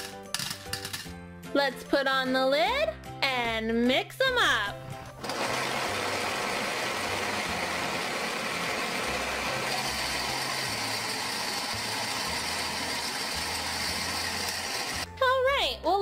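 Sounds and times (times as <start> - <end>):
candies rattling in blender: 5.2 - 15.1
toy blender motor whirring: 5.2 - 15.1.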